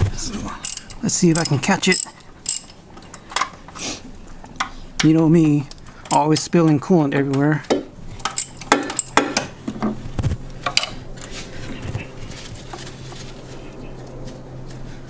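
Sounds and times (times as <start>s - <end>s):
steady low hum: 0.0s - 15.0s
socket wrench clinking on metal: 0.6s - 3.7s, 7.7s - 9.5s.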